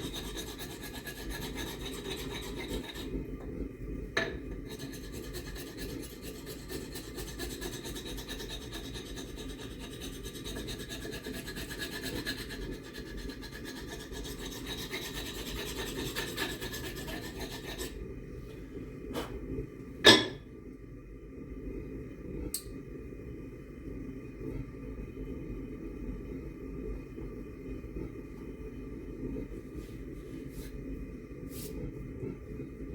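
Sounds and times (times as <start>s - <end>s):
file rasping on steel: 0.0s - 3.2s, 4.5s - 18.0s.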